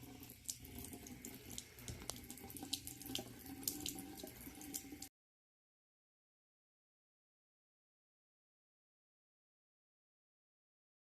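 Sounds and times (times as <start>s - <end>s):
tap water running into sink: 0.0s - 5.1s.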